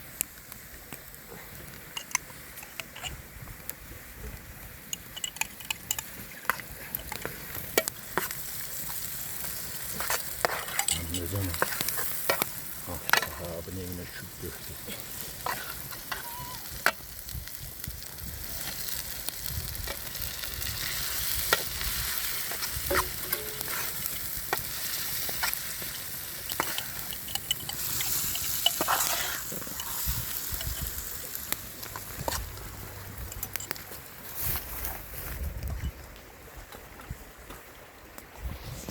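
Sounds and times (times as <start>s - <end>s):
food sizzling in a pan: 4.8s - 33.7s
utensil striking pan: 9.9s - 13.5s, 22.4s - 31.2s.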